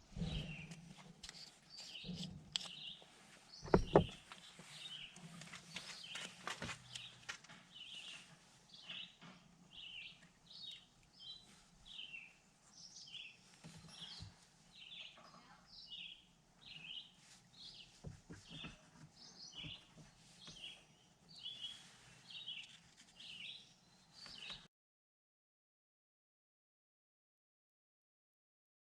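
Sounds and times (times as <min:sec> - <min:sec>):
soft knocks: 0:03.7 - 0:04.2.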